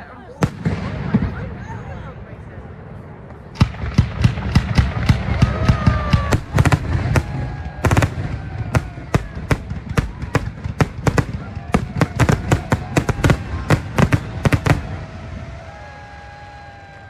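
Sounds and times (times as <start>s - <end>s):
fireworks bangs: 0.4s - 1.4s, 6.0s - 15.4s
fireworks crackling: 6.3s - 15.3s.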